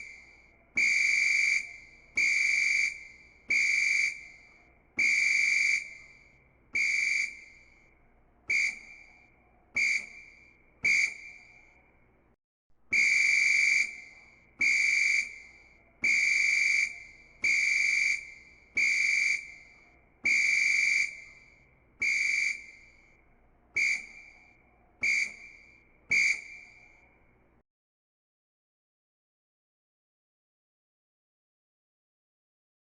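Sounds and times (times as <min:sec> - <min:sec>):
referee's whistle blasts: 0:00.0 - 0:06.2, 0:06.8 - 0:07.6, 0:08.5 - 0:09.2, 0:09.8 - 0:11.6, 0:12.9 - 0:23.0, 0:23.8 - 0:26.9.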